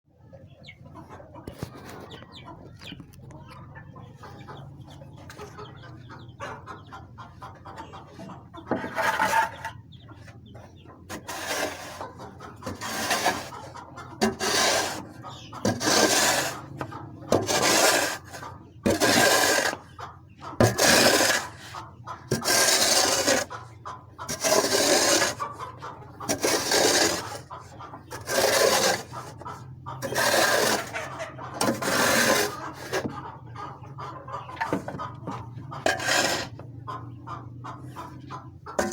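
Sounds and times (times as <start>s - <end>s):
hens clucking: 0.1s - 38.9s
loud scraping strokes: 11.1s - 12.0s, 12.6s - 13.6s, 14.2s - 16.7s, 17.3s - 19.8s, 20.6s - 23.5s, 24.3s - 25.4s, 26.3s - 27.5s, 28.1s - 29.4s, 30.0s - 33.2s, 35.8s - 36.6s.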